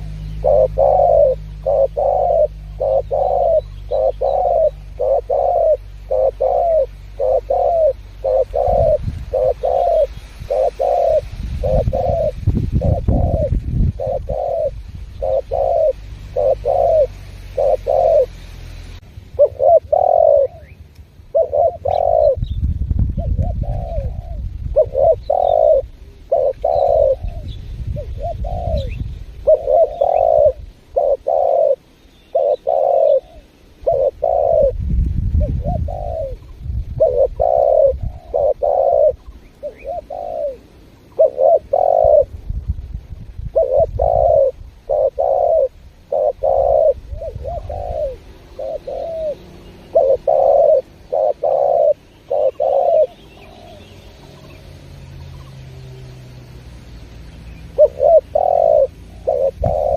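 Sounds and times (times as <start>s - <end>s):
doves cooing: 0.0s - 42.4s, 43.4s - 59.9s
low rumble: 20.5s - 26.0s.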